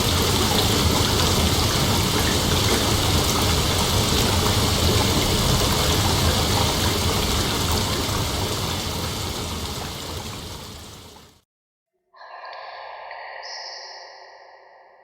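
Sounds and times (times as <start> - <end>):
heavy rain: 0.0 - 11.4.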